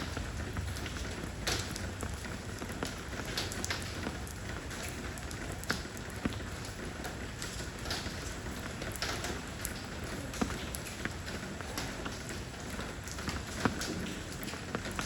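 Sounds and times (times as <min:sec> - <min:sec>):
steady rain hiss: 0:00.0 - 0:15.0.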